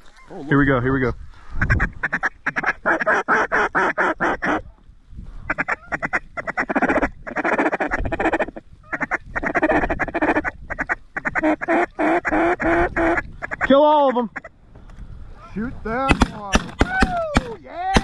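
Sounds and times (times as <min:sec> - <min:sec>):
duck call quacking: 0:01.6 - 0:04.6, 0:05.5 - 0:13.7.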